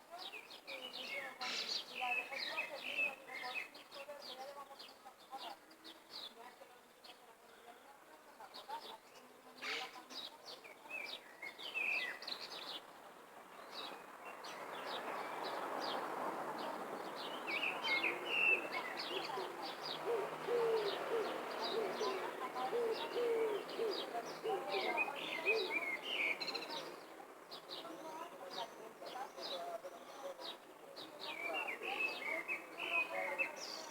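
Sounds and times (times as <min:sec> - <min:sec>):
birds chirping: 0:08.6 - 0:33.9.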